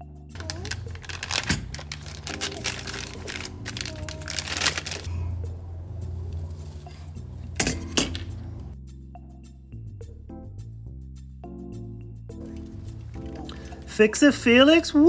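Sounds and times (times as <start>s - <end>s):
hand tools clicking and rattling: 0.4s - 8.8s.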